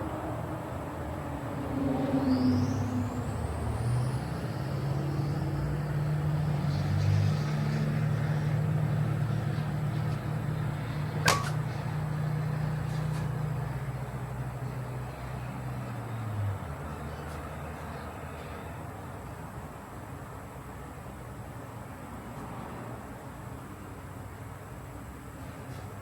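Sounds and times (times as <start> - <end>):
sharp click: 11.2 - 11.6.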